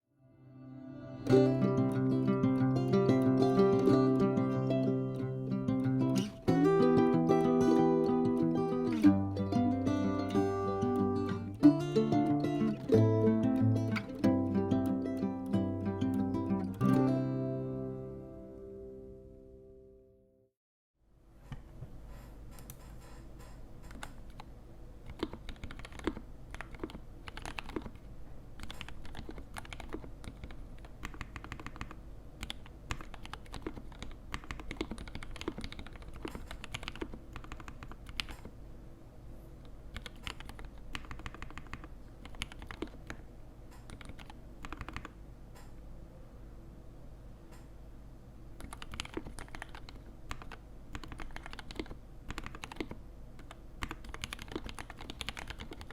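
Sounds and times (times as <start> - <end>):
mechanical keyboard typing: 25.1 - 28.0, 28.6 - 38.5, 39.9 - 43.2, 43.8 - 45.1, 48.6 - 55.9.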